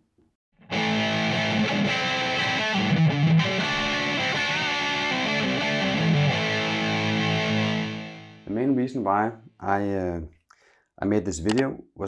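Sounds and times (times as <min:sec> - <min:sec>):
distorted electric guitar riff: 0:00.7 - 0:08.3.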